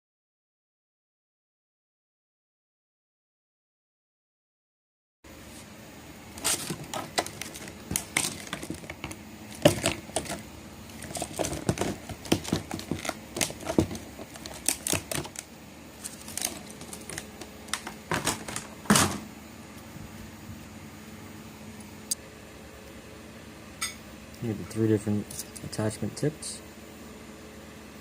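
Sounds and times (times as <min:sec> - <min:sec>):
packaging clicks and rustles: 0:06.4 - 0:19.2.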